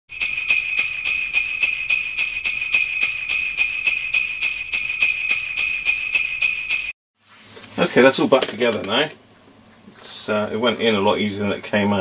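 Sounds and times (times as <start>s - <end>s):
jingle bells shaken: 0.1s - 7.0s.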